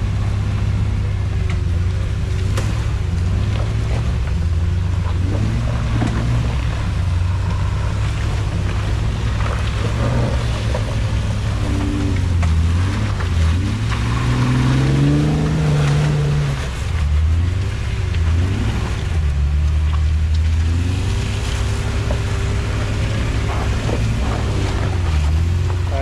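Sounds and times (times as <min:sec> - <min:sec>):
engine revving under load: 0:00.0 - 0:26.0.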